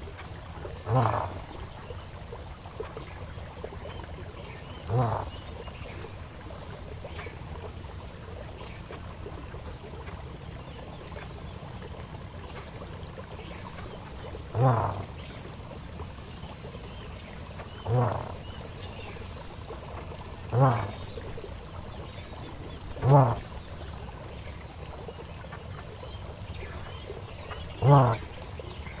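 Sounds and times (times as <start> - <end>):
low animal calls: 0.3 - 2.0, 4.6 - 6.1, 11.9 - 28.9.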